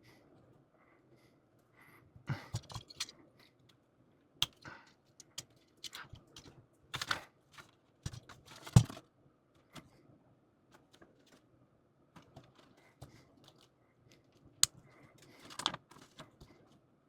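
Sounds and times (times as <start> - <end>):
plastic parts clicking and snapping: 2.5 - 3.1, 4.4 - 4.6, 5.2 - 9.0, 14.6 - 16.5.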